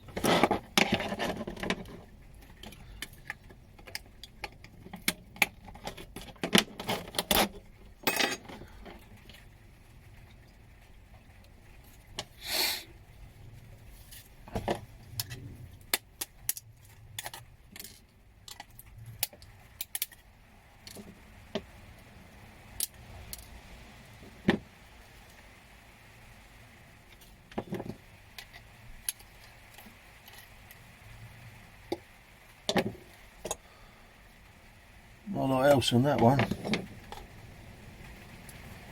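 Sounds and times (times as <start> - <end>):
metal parts and tools clinking: 5.8 - 9.0.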